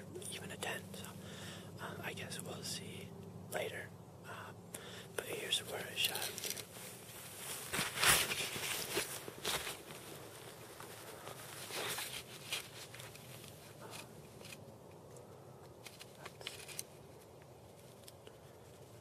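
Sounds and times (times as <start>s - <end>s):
faint rustling: 5.2s - 19.0s.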